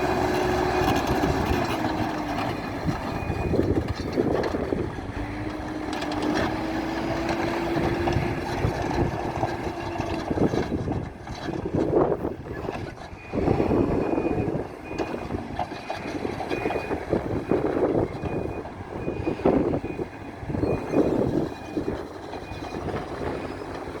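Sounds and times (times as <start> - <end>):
backhoe engine and working noise: 0.0 - 24.0
reversing alarm beeps: 0.6 - 3.8, 12.5 - 23.6.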